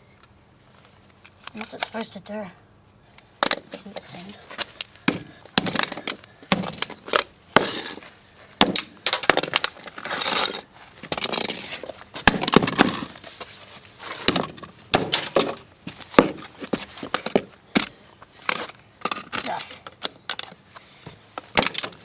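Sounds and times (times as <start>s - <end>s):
toy car being smashed: 8.6s - 13.2s, 21.4s - 22.0s.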